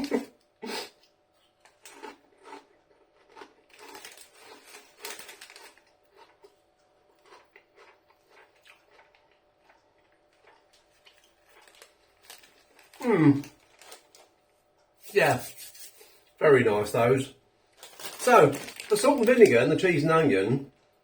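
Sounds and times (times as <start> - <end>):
chewing crunchy crisps: 0.9 - 14.5, 17.7 - 19.8.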